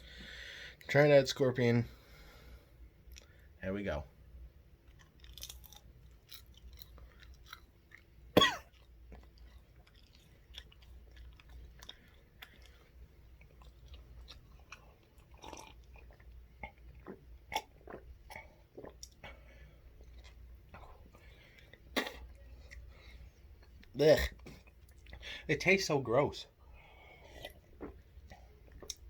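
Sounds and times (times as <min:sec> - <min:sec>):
person chewing: 0:04.8 - 0:25.2, 0:27.0 - 0:29.0.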